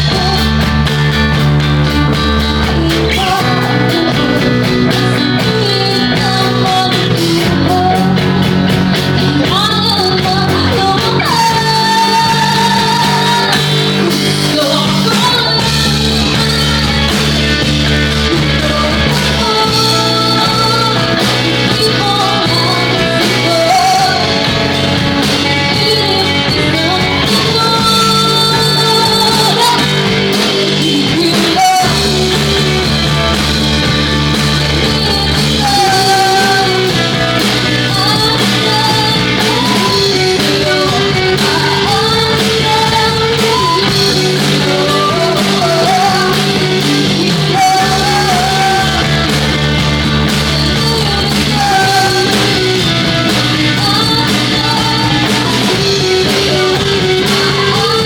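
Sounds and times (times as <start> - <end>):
rock band playing: 0.0 - 58.0
woman singing: 0.0 - 58.0.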